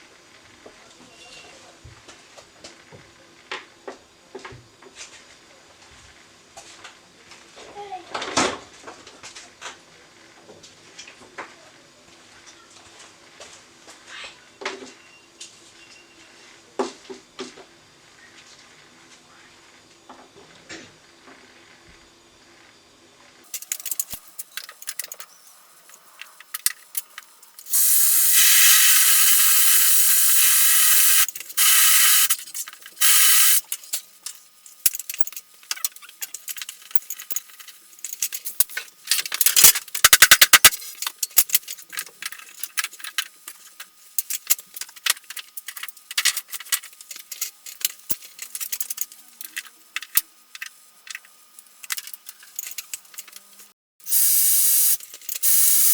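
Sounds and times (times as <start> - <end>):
loud spraying hiss: 27.6 - 32.4, 33.0 - 33.7, 54.1 - 55.9
small clicks and clatters: 30.3 - 53.7.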